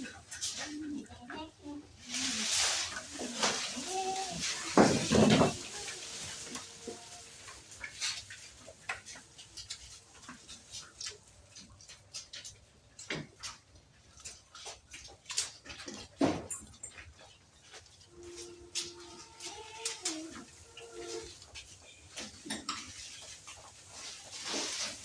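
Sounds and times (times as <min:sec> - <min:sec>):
goats moving clicks and knocks: 0:00.0 - 0:25.0.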